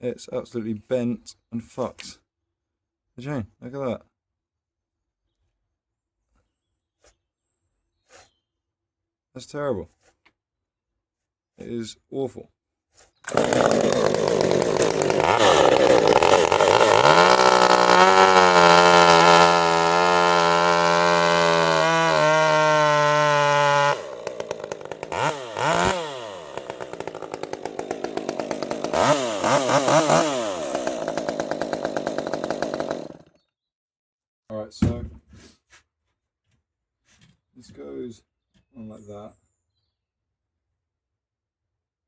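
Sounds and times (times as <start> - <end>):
chainsaw engine revving: 13.3 - 33.3.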